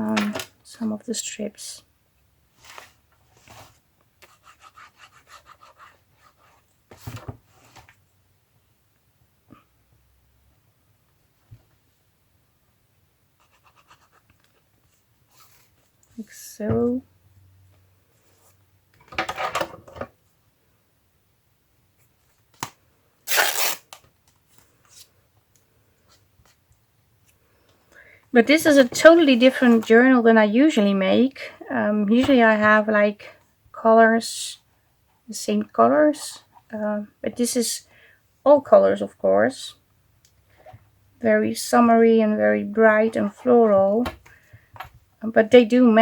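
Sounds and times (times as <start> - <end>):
paper crackling: 23.3 - 25.0.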